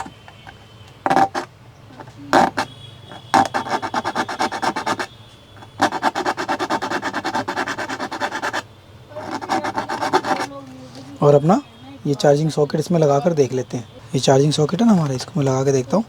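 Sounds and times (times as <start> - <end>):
round file rasping: 0.0 - 0.3, 1.0 - 11.0
knocks: 1.0 - 1.5.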